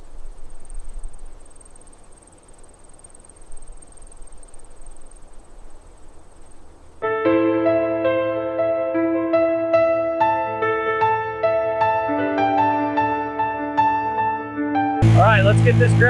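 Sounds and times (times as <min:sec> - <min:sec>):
insect trill: 0:00.0 - 0:07.0
soft piano music: 0:07.0 - 0:15.6.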